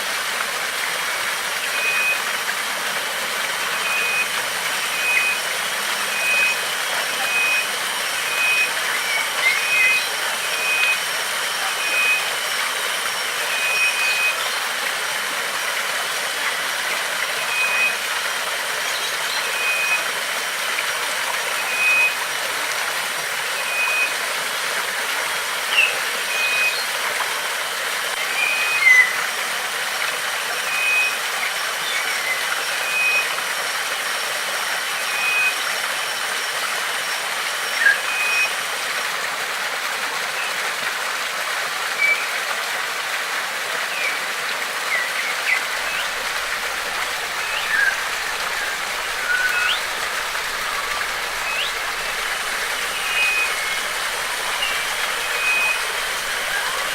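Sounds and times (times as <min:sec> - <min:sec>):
water rushing: 0:00.0 - 0:56.9
birds chirping: 0:03.6 - 0:14.8, 0:44.9 - 0:56.9.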